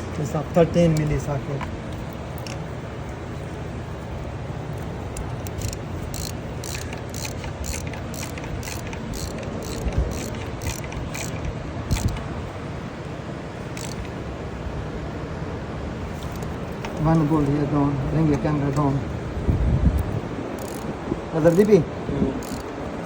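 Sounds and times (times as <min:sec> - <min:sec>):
socket ratchet clicking: 0:00.9 - 0:02.7, 0:04.7 - 0:12.3, 0:13.7 - 0:14.2, 0:16.2 - 0:17.1, 0:20.0 - 0:21.8, 0:22.4 - 0:22.8.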